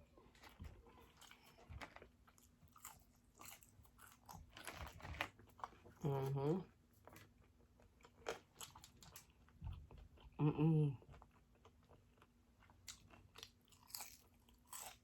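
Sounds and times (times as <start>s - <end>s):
person humming: 10.4s - 11.0s.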